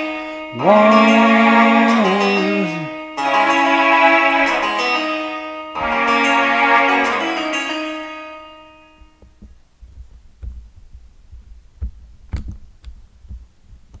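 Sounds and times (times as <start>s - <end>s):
karaoke backing track chord: 0.0s - 8.9s
low thumps: 9.0s - 14.0s.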